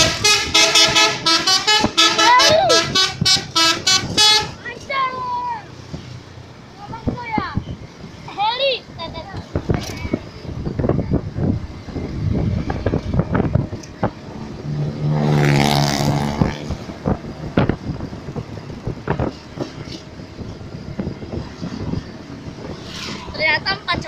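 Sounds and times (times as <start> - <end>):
bus air horn blast: 0.0 - 4.6.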